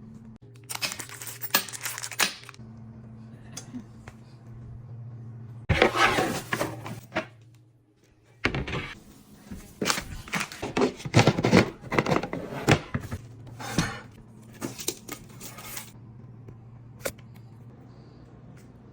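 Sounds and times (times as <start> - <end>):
objects rustling and clattering: 0.6 - 2.6, 5.7 - 16.0
low hum: 1.2 - 5.7.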